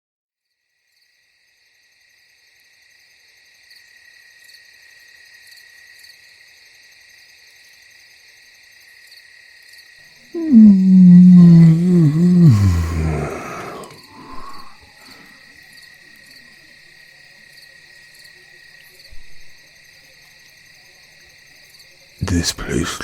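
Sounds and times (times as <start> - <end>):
deep pitched vocal sound: 10.4 - 14.8, 22.2 - 23.0
crickets chirping: 10.4 - 16.4.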